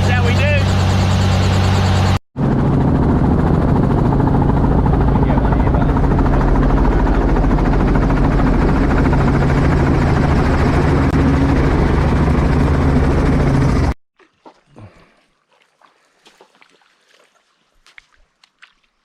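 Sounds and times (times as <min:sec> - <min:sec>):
helicopter engine and rotor hum: 0:00.0 - 0:14.0.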